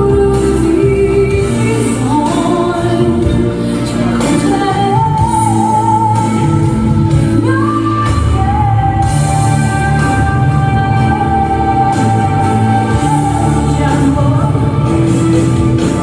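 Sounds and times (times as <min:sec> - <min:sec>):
woman singing: 0:00.0 - 0:16.0.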